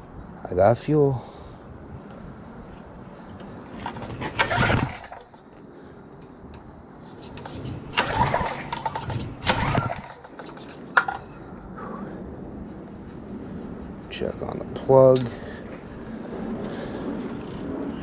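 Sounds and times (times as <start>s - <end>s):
engine recoil cord pull-start: 3.8s - 5.4s, 7.2s - 11.2s.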